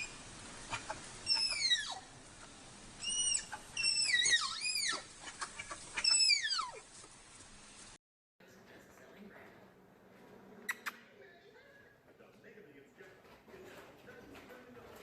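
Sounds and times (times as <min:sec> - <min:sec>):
animal shrill calls: 0:00.0 - 0:02.2, 0:03.0 - 0:06.9.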